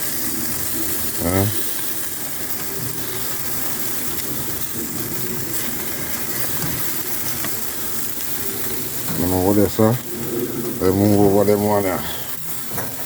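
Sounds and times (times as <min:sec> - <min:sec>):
chicken sizzling in a pan: 0:00.0 - 0:13.0.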